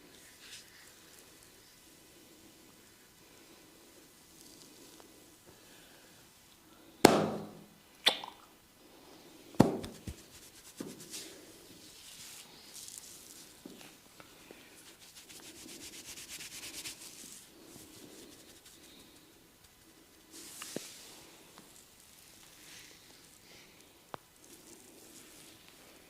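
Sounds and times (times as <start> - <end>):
hands smacking: 9.6 - 11.0
hands rubbing skin and hair: 9.6 - 23.7, 24.4 - 26.0.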